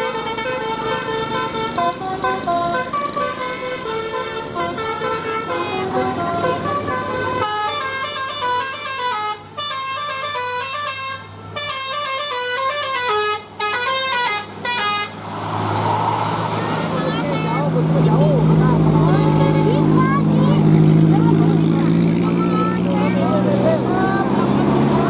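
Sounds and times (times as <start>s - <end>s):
air horn playing a melody: 0.0s - 15.2s.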